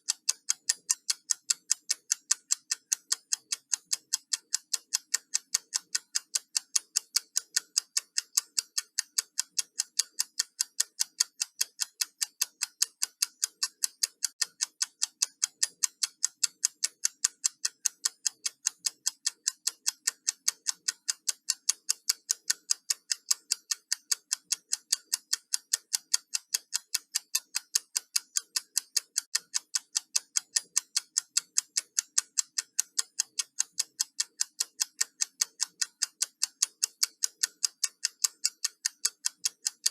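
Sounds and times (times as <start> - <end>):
timer ticking: 0.0 - 39.9.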